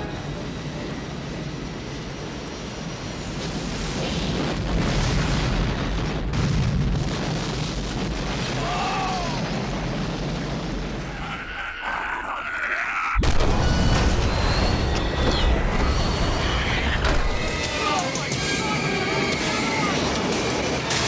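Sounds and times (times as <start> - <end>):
rumble of explosions and wreckage: 0.0 - 21.0
high arching whine: 13.1 - 20.8.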